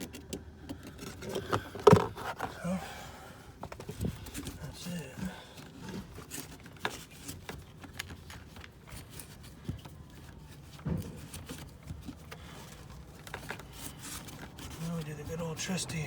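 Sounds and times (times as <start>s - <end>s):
rustling and rubbing: 3.5s - 16.0s.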